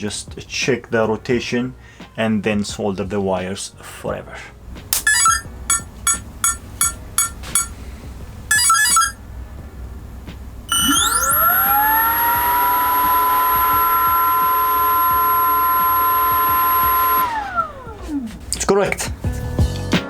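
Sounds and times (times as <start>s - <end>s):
short electronic beeps: 5.0s - 7.7s, 8.5s - 9.2s, 10.7s - 11.6s
electric fan whine: 5.5s - 19.3s.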